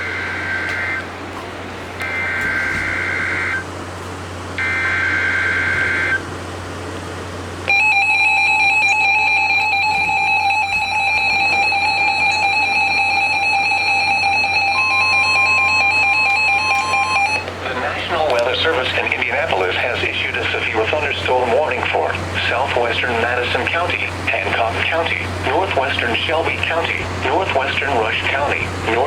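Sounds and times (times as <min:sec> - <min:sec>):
warbling data tones: 0:02.0 - 0:03.6, 0:04.6 - 0:06.2, 0:07.7 - 0:17.4
steady loud alert tone: 0:02.0 - 0:03.7, 0:04.6 - 0:06.2, 0:07.7 - 0:21.6.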